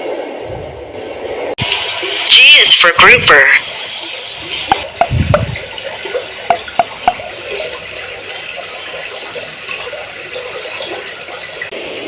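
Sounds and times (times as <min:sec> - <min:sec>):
water bubbling and gurgling: 0:00.7 - 0:11.8
bubble pops: 0:04.7 - 0:05.7, 0:06.5 - 0:07.3.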